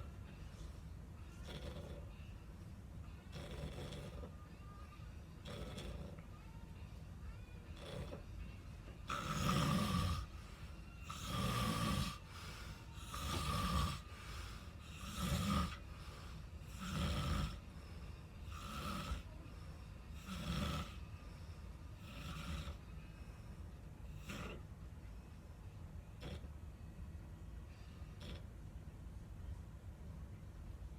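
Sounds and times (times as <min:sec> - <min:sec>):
person snoring: 0:01.4 - 0:02.1, 0:03.3 - 0:04.4, 0:05.4 - 0:06.2, 0:07.7 - 0:08.2, 0:09.1 - 0:17.8, 0:18.4 - 0:19.4, 0:20.1 - 0:21.0, 0:22.0 - 0:22.9, 0:24.2 - 0:24.6.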